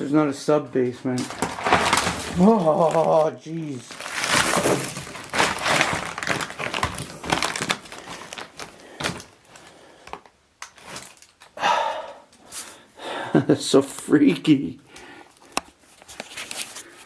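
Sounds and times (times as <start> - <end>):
footsteps crunching through floor: 0.8 - 9.7.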